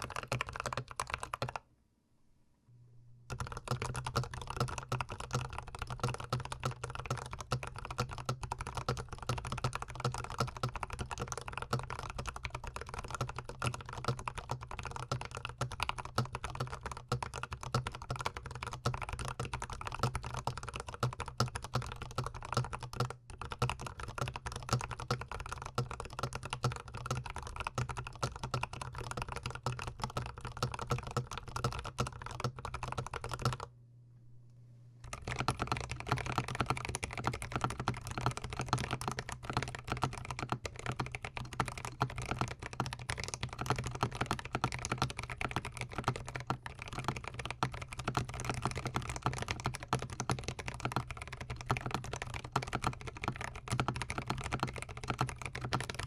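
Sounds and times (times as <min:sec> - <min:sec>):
fast typing on mechanical keyboard: 0:00.0 - 0:01.6, 0:03.3 - 0:33.7, 0:35.1 - 0:56.0.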